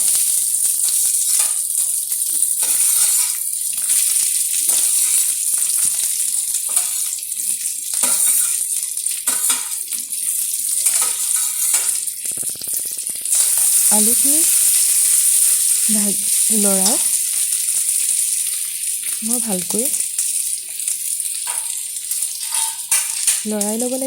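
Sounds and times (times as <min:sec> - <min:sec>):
food sizzling in oil: 0:00.0 - 0:24.0
spatula scraping pan: 0:02.6 - 0:04.0, 0:04.7 - 0:07.2, 0:07.9 - 0:08.7, 0:10.8 - 0:12.1, 0:21.5 - 0:23.3.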